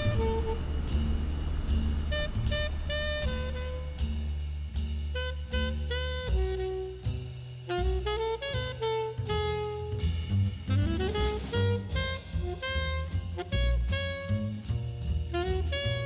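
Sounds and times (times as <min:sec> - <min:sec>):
saxophone melody: 0:00.0 - 0:04.6, 0:07.7 - 0:10.0, 0:10.7 - 0:14.4, 0:15.3 - 0:16.0
bass and drums: 0:00.0 - 0:16.0.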